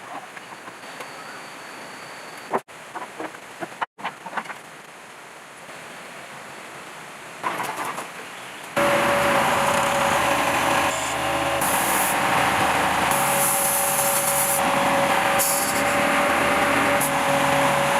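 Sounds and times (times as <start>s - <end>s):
air pump motor humming: 8.8s - 17.9s
high hiss: 10.3s - 17.9s.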